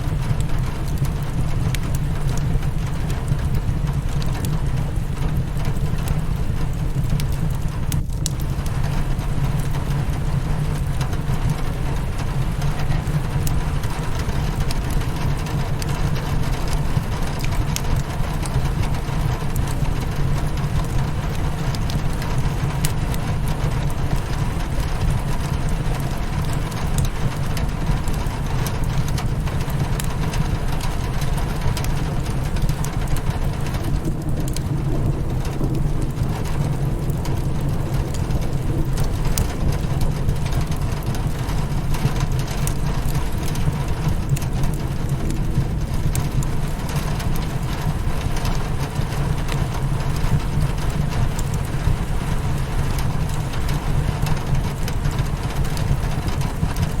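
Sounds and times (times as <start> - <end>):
rain hitting a windowpane: 0.0 - 57.0
wood fire crackling: 0.0 - 57.0
low rumble: 30.0 - 52.1.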